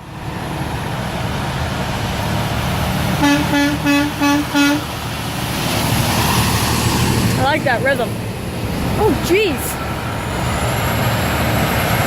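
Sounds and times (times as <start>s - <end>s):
passing traffic rumble: 0.0s - 12.0s
truck horn short toots: 3.2s - 4.8s.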